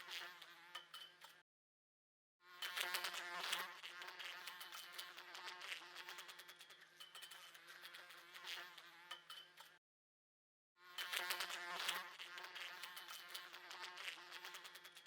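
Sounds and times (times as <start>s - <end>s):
fly buzzing: 0.0s - 1.4s, 2.5s - 6.5s, 7.7s - 9.8s, 10.8s - 15.0s
fly ticking against glass: 0.0s - 1.4s, 2.6s - 9.8s, 11.0s - 15.0s.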